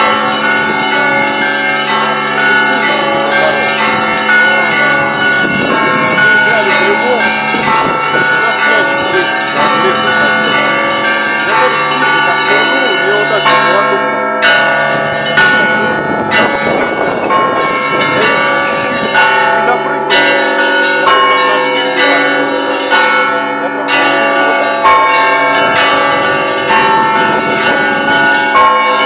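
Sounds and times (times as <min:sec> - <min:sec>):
heavy bell strokes: 0:00.0 - 0:29.0
smaller bells chiming: 0:00.0 - 0:29.0.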